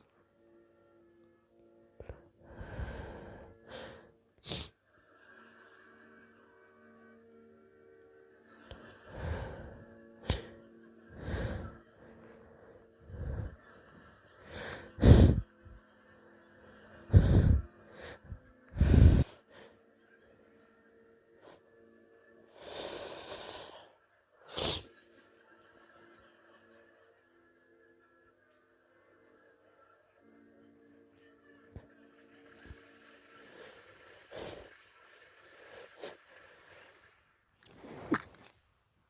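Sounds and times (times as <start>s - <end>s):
woman sniffling: 24.5s - 24.9s.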